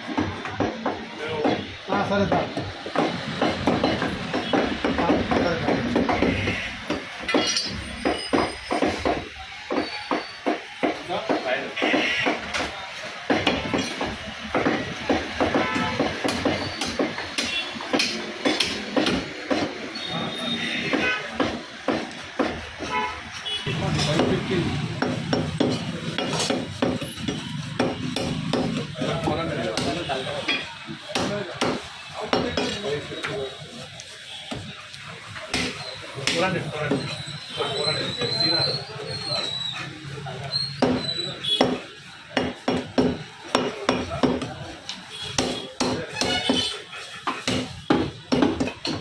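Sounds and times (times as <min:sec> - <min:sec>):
knife chopping meat on block: 0:02.3 - 0:19.8, 0:24.0 - 0:30.1, 0:31.1 - 0:32.8, 0:40.8 - 0:44.6, 0:45.2 - 0:49.0.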